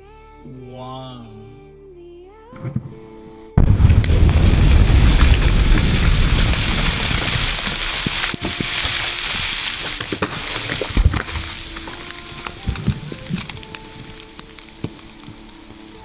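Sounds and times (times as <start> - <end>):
rushing rumble of blast: 3.6 - 12.0
sand and dirt pattering down: 3.9 - 15.4.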